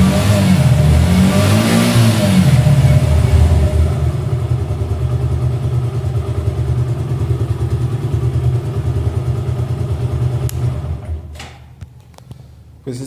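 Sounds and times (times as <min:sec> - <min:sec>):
motorcycle engine idling: 0:02.4 - 0:11.3.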